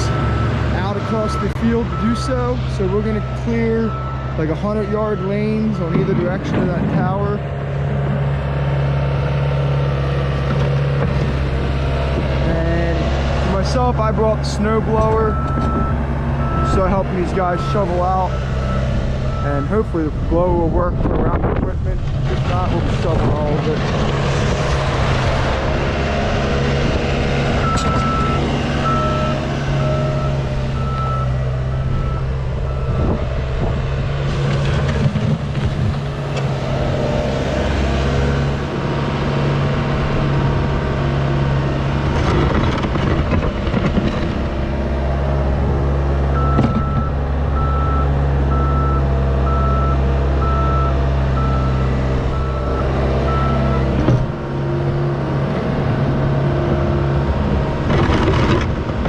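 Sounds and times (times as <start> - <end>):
reversing alarm beeping: 0.0 - 6.7, 15.2 - 19.9, 27.6 - 33.2, 46.4 - 53.9
diesel engine under load: 0.0 - 59.0.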